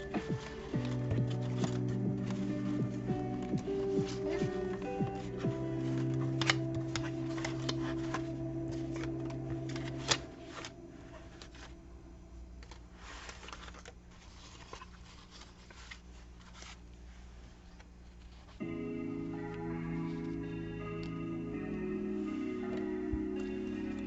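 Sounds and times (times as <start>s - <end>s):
paper rustling and crackling: 0.0s - 11.9s, 12.6s - 18.7s
held music chord: 0.0s - 12.6s, 18.6s - 24.0s.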